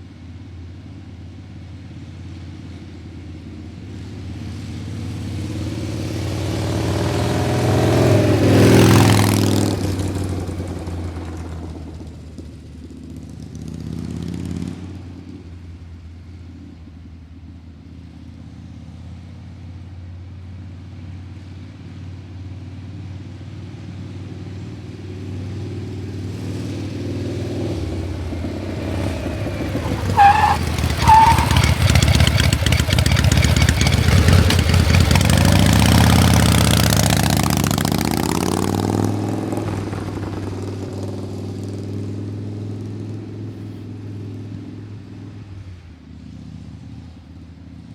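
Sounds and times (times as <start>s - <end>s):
vehicle engine revving: 4.4s - 15.3s, 24.4s - 47.4s
short high squeals: 29.8s - 32.0s.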